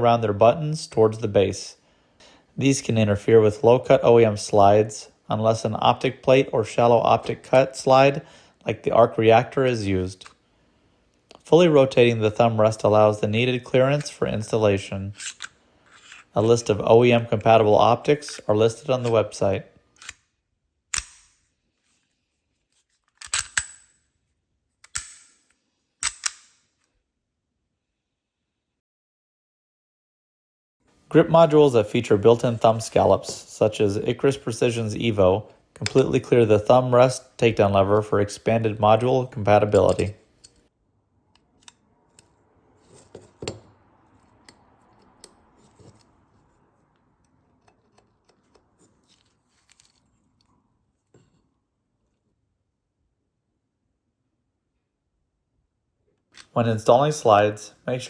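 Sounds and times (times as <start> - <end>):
pistol parts clicking: 13.9 - 14.2, 15.1 - 16.7, 18.0 - 20.3, 20.9 - 21.5, 23.0 - 24.0, 24.8 - 27.0, 39.7 - 40.6.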